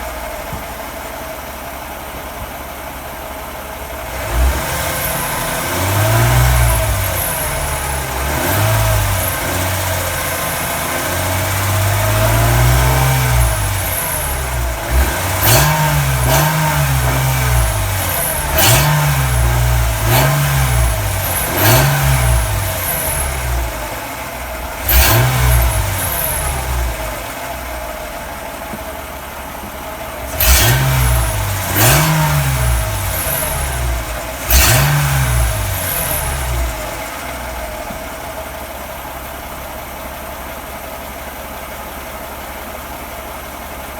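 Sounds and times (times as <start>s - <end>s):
car engine revving: 3.9s - 29.1s, 29.8s - 38.7s.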